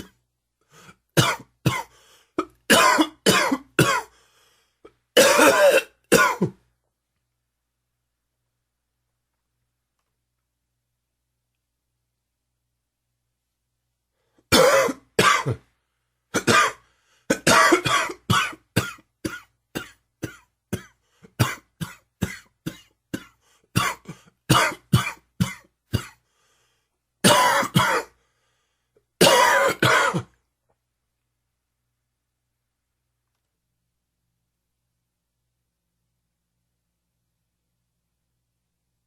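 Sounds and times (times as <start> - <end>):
man coughing: 0.8 - 4.1, 4.9 - 6.6, 14.5 - 15.7, 16.3 - 26.2, 27.2 - 28.2, 29.2 - 30.4.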